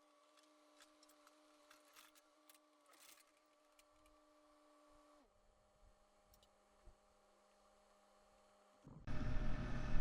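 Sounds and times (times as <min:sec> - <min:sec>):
faint steady hum: 0:00.0 - 0:10.0.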